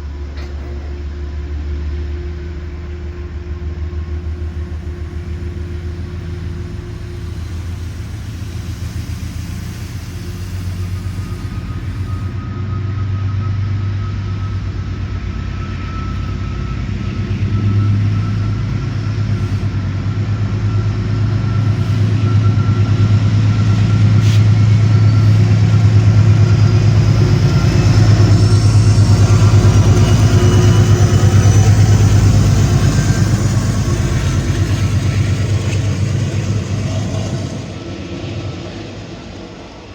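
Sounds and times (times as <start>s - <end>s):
locomotive diesel engine throbbing: 0.0s - 39.9s.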